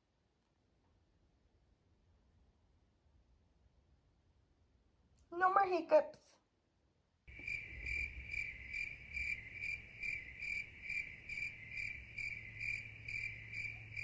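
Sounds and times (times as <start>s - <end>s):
cricket chirping: 7.3s - 14.0s.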